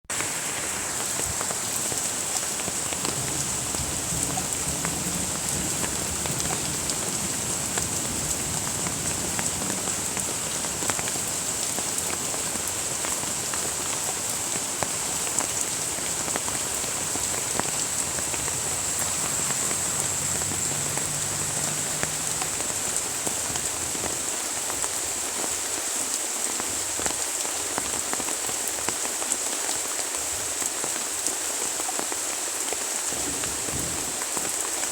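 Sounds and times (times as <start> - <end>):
steady rain: 0.0 - 34.9
raindrops ticking: 2.4 - 24.2.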